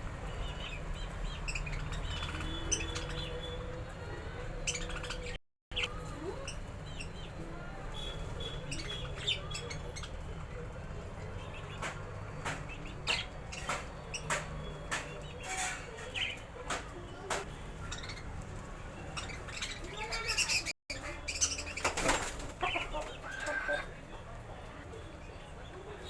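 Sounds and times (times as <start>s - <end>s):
budgies chirping and squawking: 0.3s - 16.8s, 17.7s - 23.9s
beaks pecking at food: 8.1s - 20.6s.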